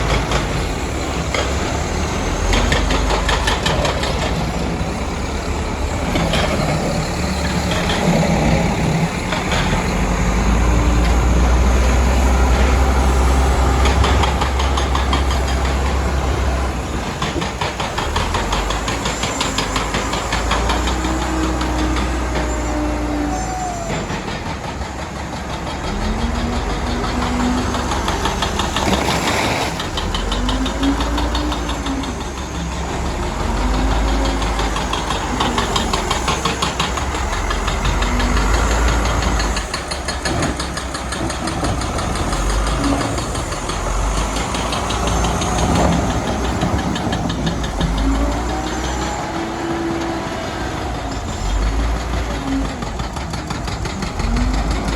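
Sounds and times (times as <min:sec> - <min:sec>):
heavy machine diesel engine revving: 0:00.0 - 0:54.9
rapid clatter: 0:50.8 - 0:54.9.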